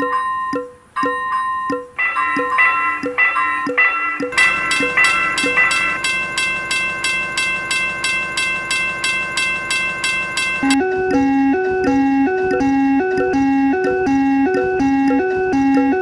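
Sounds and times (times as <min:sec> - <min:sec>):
level-crossing warning bell ringing: 0:00.0 - 0:12.0
bouncy electronic melody: 0:00.0 - 0:16.0.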